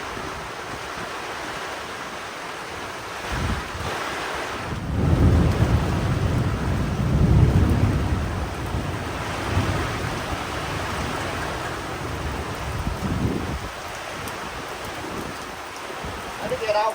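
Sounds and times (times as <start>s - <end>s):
rain falling steadily: 0.0s - 16.9s
low thunder rumbling: 4.6s - 15.5s.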